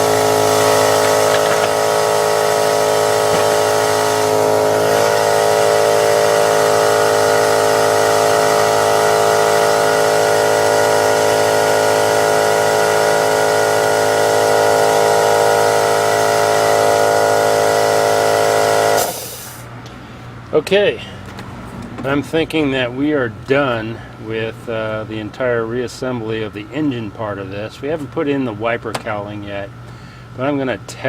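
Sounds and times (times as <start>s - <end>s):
air ratchet whirring: 0.0s - 19.6s.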